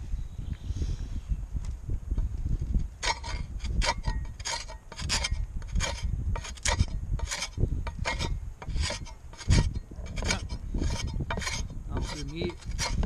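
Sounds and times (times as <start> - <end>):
sharpener rasping on steel edge: 3.0 - 13.0.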